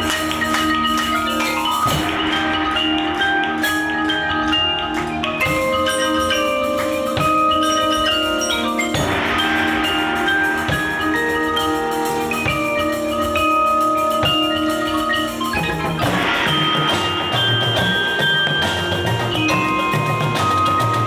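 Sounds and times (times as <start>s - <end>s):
marimba and glockenspiel: 0.0s - 21.0s
show band playing: 0.0s - 21.0s.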